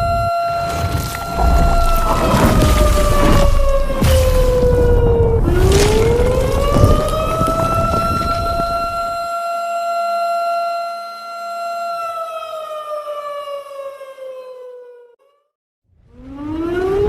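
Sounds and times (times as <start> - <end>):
siren wailing: 0.0 - 10.4, 11.5 - 15.2, 16.0 - 17.0
thuds: 1.2 - 9.2
loud low rumble: 1.3 - 9.2.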